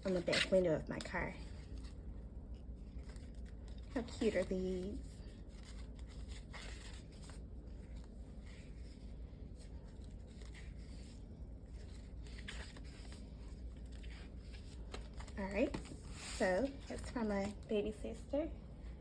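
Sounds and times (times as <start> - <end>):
sticker sheets rustling: 2.9 - 17.6.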